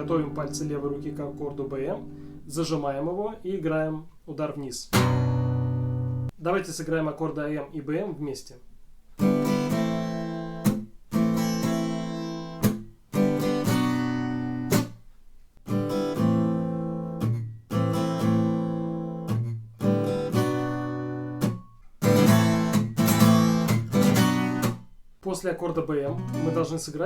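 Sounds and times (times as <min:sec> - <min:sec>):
acoustic guitar strumming: 0:00.0 - 0:03.0, 0:04.9 - 0:06.3, 0:09.2 - 0:15.0, 0:15.6 - 0:24.9, 0:26.1 - 0:26.7.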